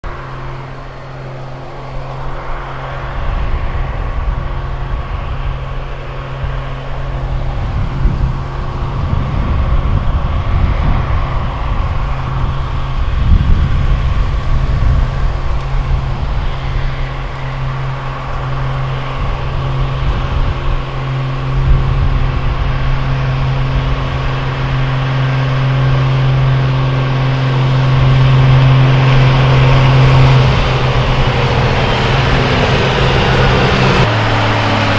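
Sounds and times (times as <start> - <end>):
tractor engine running: 0.0 - 34.9
uneven low rumble: 0.0 - 34.9.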